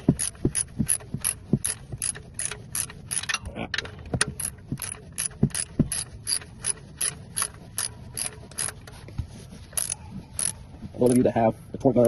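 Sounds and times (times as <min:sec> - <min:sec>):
ratchet wrench clicking: 0:00.1 - 0:03.4, 0:04.2 - 0:08.8, 0:09.8 - 0:11.3.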